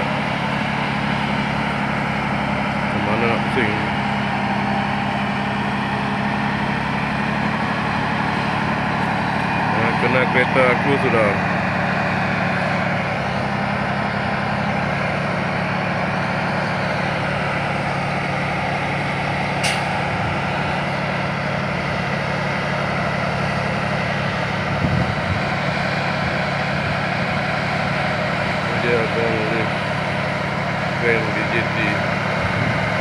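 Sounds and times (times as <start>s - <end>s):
crane engine running: 0.0s - 33.0s
short sharp click: 19.6s - 19.9s.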